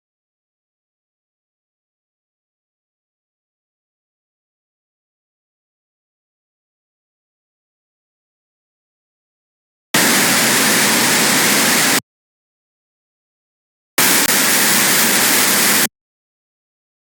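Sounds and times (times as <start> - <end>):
harsh electronic noise bursts: 10.0 - 12.0, 14.0 - 15.9.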